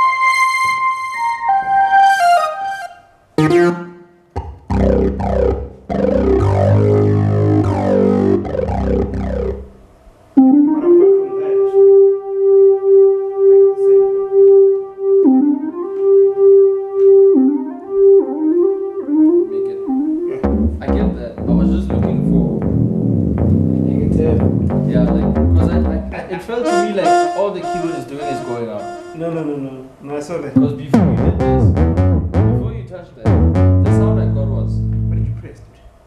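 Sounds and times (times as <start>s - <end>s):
synthesizer chords over deep bass: 4.6s - 9.8s, 12.0s - 26.1s, 26.7s - 29.2s, 30.9s - 35.5s
synthesizer lead with pitch bends: 4.7s - 9.8s, 26.7s - 29.3s, 31.2s - 35.4s.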